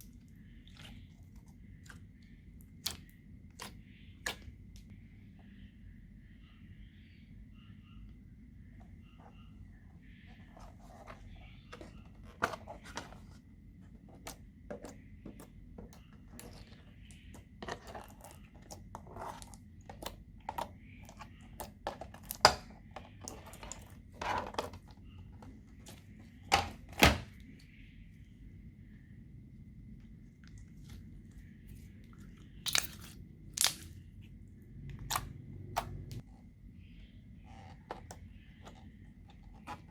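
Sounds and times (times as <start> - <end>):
slime clicking and popping: 32.7 - 34.0.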